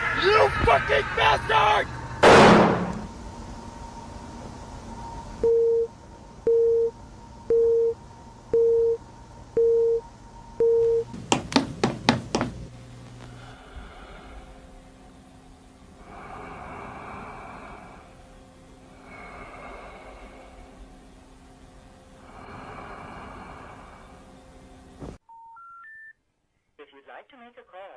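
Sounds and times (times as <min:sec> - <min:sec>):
loud burst of noise: 0:00.0 - 0:06.4
telephone busy signal beeps: 0:05.4 - 0:05.9, 0:06.5 - 0:09.0, 0:09.6 - 0:10.0, 0:10.6 - 0:11.1.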